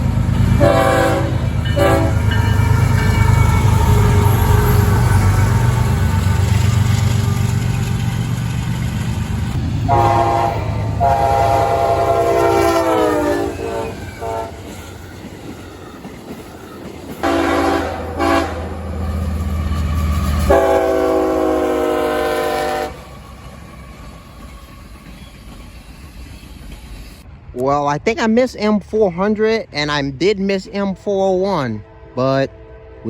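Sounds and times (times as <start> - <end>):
diesel engine low rumble: 0.0 - 2.4, 3.2 - 12.5
locomotive horn blasts: 0.6 - 5.9, 9.8 - 14.7, 17.2 - 19.0, 20.5 - 23.1, 31.7 - 33.0.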